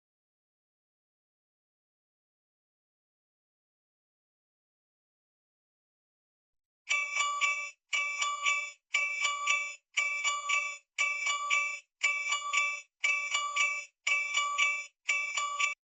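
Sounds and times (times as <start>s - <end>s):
alarm clock chiming: 6.9s - 15.8s.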